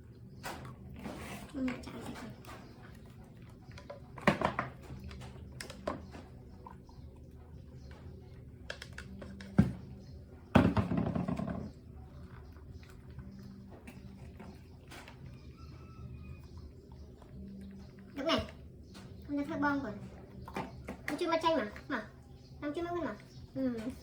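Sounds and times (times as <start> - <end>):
knocks and thuds of objects: 9.5 - 9.9, 10.5 - 11.8.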